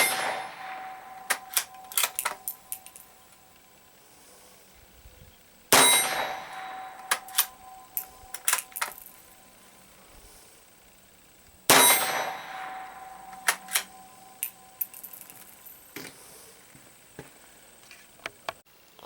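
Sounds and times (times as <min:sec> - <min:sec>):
loud metallic clang: 0:00.0 - 0:03.5, 0:05.7 - 0:09.5, 0:11.7 - 0:15.6.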